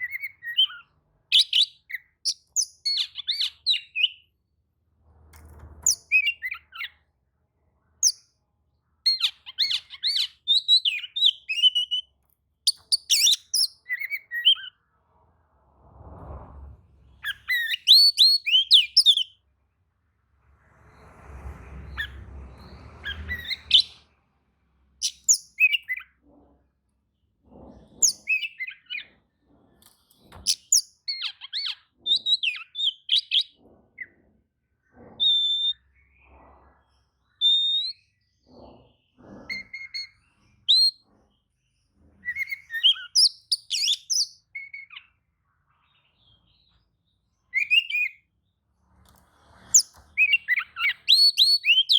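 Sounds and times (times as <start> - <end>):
bird singing whistles and trills: 0.0 - 4.3, 9.1 - 12.1, 12.7 - 14.8, 17.2 - 19.4, 23.0 - 24.0, 25.0 - 26.1, 28.0 - 29.1, 30.4 - 34.2, 35.2 - 35.9, 37.4 - 38.2, 39.5 - 41.0, 42.2 - 45.1, 47.5 - 48.2, 49.7 - 51.9.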